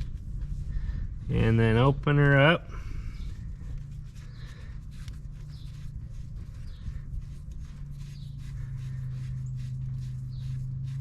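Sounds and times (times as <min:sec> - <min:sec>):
steady low hum: 0:00.0 - 0:11.0
bird chirping: 0:05.2 - 0:11.0.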